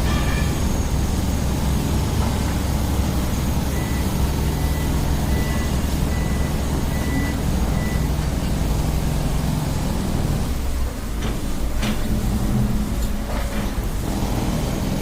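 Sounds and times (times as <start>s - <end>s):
bulldozer diesel engine running: 0.0s - 15.0s
reverse alarm beeping: 3.6s - 8.1s.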